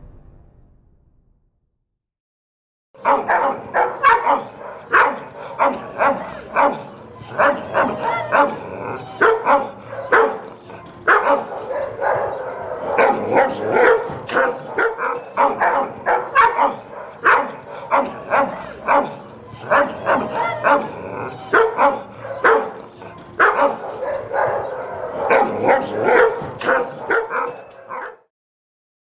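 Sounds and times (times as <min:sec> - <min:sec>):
dogs barking: 0:03.0 - 0:28.3.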